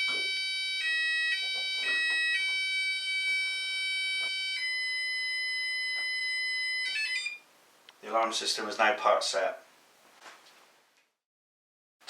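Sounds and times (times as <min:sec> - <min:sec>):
electronic alarm exit tone: 0:00.0 - 0:07.4.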